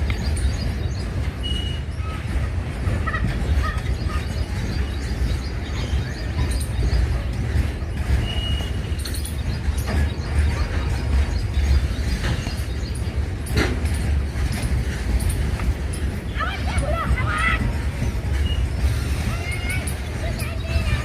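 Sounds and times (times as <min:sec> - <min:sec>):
freight train rumbling: 0:00.0 - 0:21.0
metal clanks: 0:06.4 - 0:16.4.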